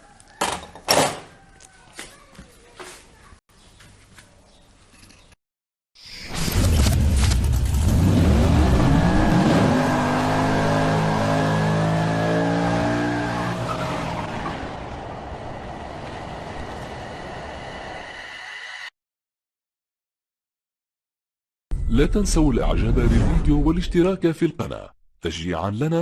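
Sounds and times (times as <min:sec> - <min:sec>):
car engine revving: 0:06.7 - 0:14.9.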